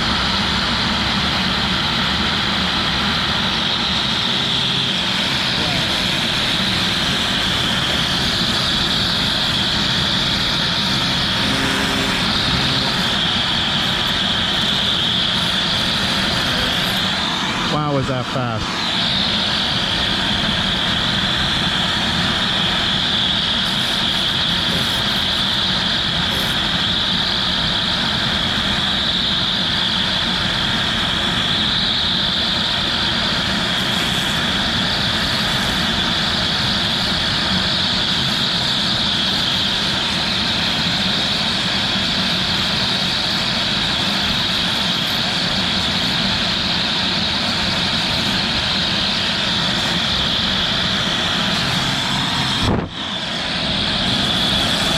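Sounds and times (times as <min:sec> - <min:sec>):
router spindle high-pitched whine: 0:00.0 - 0:54.9
router cutting plastic: 0:05.6 - 0:17.2, 0:23.7 - 0:25.6.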